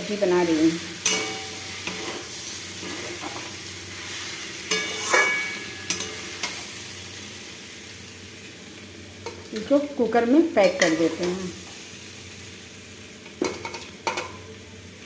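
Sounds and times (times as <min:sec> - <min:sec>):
curry sizzling in a pot: 0:00.0 - 0:15.0
metal spoon clinking on pot: 0:01.0 - 0:02.0, 0:04.7 - 0:06.2.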